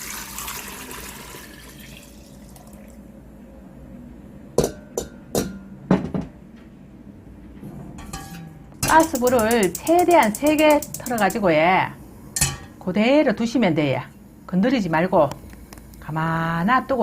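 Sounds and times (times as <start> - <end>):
liquid pouring into a pot: 0.0 - 3.0.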